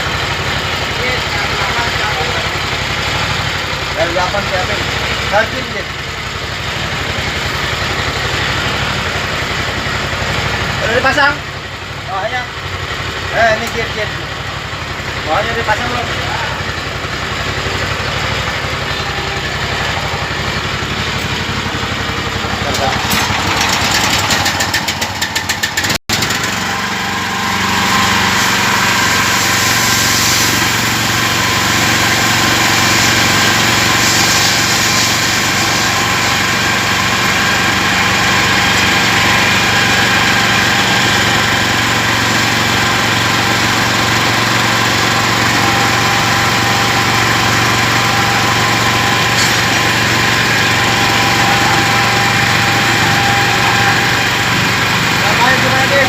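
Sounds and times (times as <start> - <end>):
engine running steadily: 0.0 - 56.0
fast rattle: 21.0 - 26.5.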